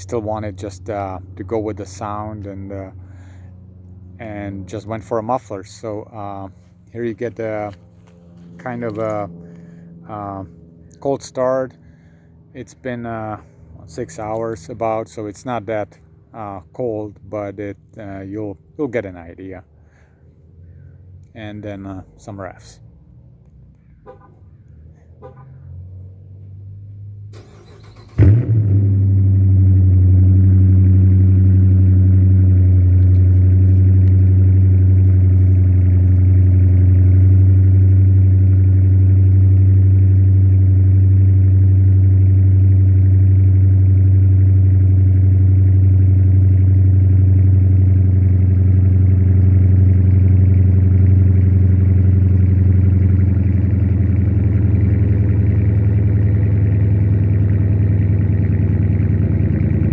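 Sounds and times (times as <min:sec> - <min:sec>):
car engine starting and idling: 0:00.0 - 0:59.9
starter motor cranking: 0:27.4 - 0:28.4.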